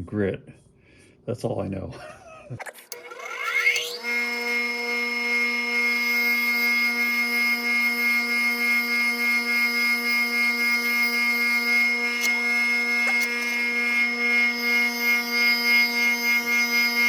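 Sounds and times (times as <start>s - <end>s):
bench grinder motor whine: 2.5s - 17.0s.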